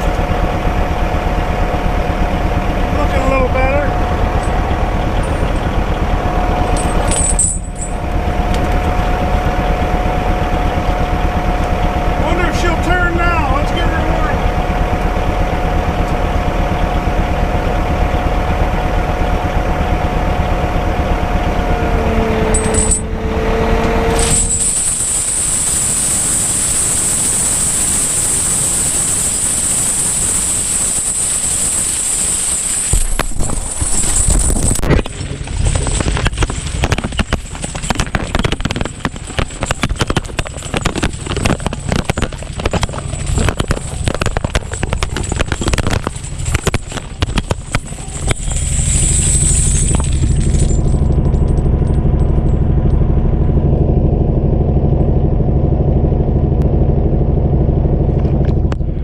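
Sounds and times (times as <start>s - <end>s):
rapid clattering impacts: 0.0s - 15.6s, 30.2s - 52.6s
low engine drone: 0.0s - 59.0s
wood chipper high whine: 0.0s - 59.0s.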